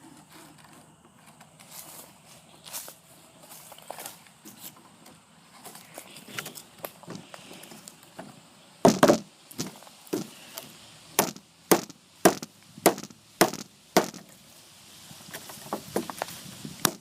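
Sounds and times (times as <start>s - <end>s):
hatchet chopping a dry branch: 11.2s - 14.2s.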